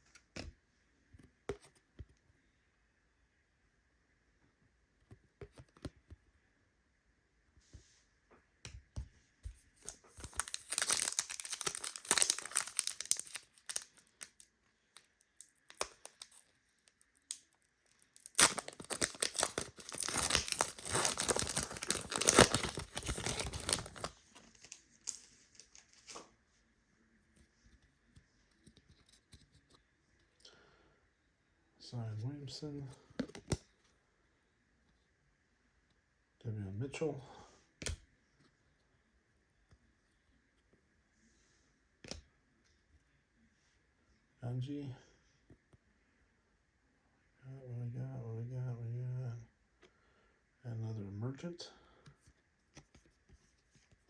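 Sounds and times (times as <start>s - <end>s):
wrappers torn and crinkled: 10.0s - 26.2s.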